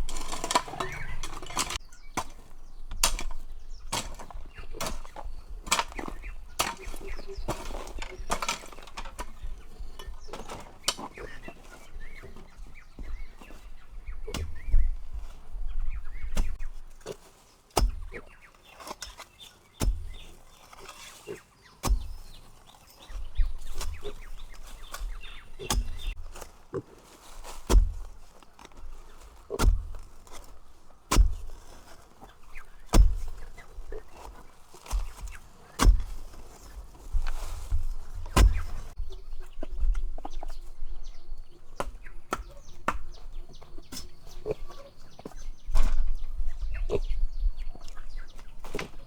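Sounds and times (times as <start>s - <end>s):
sharp knocks with dull thud: 38.3s - 38.8s.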